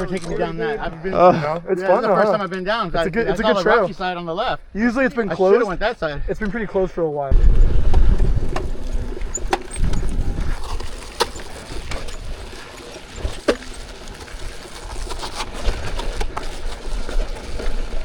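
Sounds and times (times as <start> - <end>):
wind rumbling on microphone: 7.3 - 18.0
stones knocking under tyre: 7.8 - 18.0.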